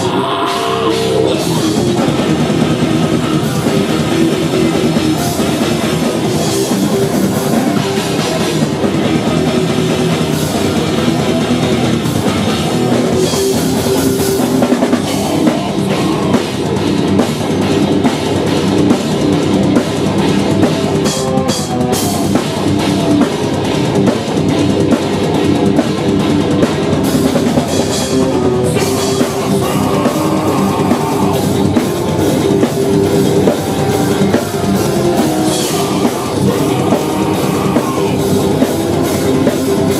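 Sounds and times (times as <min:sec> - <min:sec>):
bass: 0:00.0 - 0:39.9
distorted electric guitars: 0:00.0 - 0:39.9
fast dense drumming: 0:00.0 - 0:39.9.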